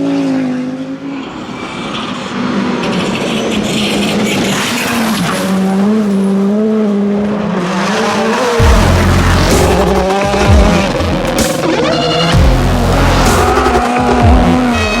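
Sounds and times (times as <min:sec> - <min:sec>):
race car engine revving: 0:00.0 - 0:15.0
heavy low rumble: 0:08.6 - 0:14.7.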